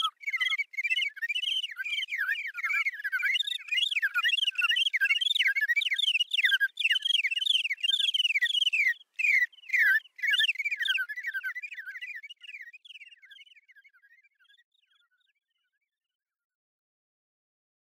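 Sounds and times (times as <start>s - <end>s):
bird chirping: 0.0s - 15.8s.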